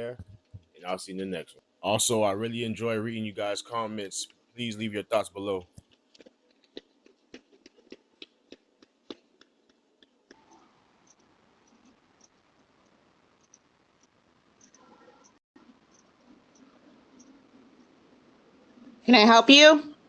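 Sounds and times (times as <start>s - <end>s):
faint steady hiss: 0.0s - 6.4s.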